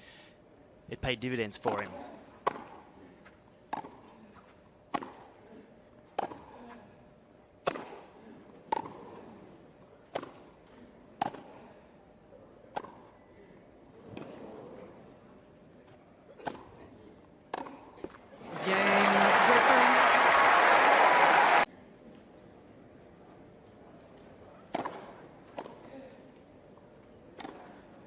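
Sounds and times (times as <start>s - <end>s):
tennis balls struck by rackets: 2.4s - 2.9s, 3.7s - 4.2s, 4.9s - 5.4s, 6.1s - 6.6s, 7.6s - 9.3s, 10.0s - 10.6s, 11.2s - 11.6s, 12.7s - 13.1s, 17.5s - 18.0s, 24.7s - 25.8s, 27.4s - 27.8s
crowd applause: 18.4s - 21.7s.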